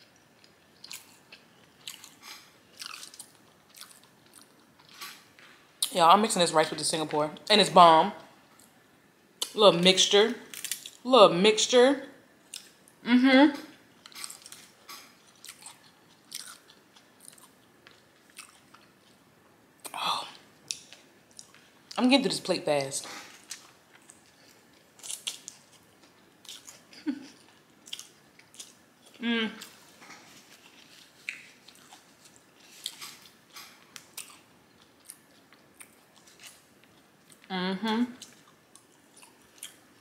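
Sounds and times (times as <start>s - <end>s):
chewing and mouth smacking: 0.1s - 6.0s, 14.0s - 19.2s, 20.7s - 21.7s, 23.3s - 37.5s, 38.2s - 39.9s.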